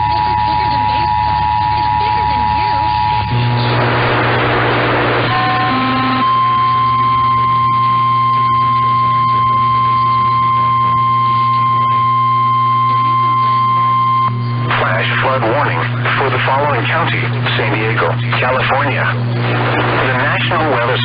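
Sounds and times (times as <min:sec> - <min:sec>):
radio static: 0:00.0 - 0:07.3, 0:10.4 - 0:21.0
two-tone attention signal: 0:00.0 - 0:14.7
low hum: 0:02.4 - 0:21.0.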